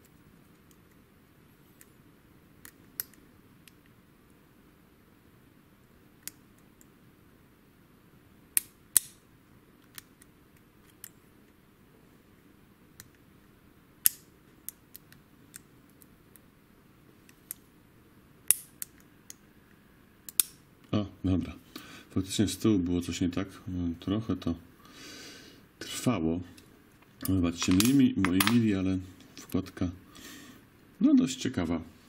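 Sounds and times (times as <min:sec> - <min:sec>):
lock pick metallic clicks: 0:02.6 - 0:03.8, 0:08.6 - 0:09.2, 0:18.4 - 0:19.4, 0:20.3 - 0:20.6.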